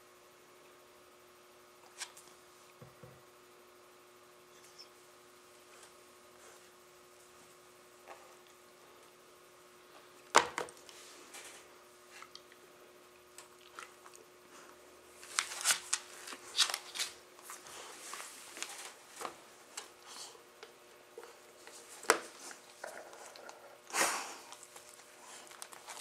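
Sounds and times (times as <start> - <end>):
dogs scuffling and chewing: 13.3 - 26.0.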